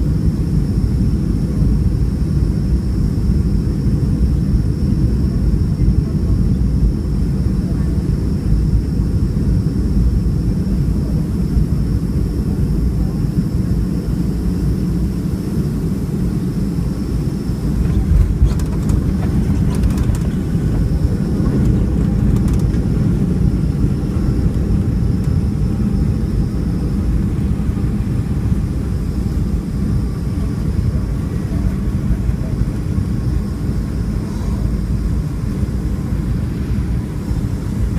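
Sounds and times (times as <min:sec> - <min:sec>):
airliner engine and airflow roar: 0:00.0 - 0:37.9
faint high whine: 0:00.0 - 0:37.9
light cabin rattles: 0:17.8 - 0:23.0.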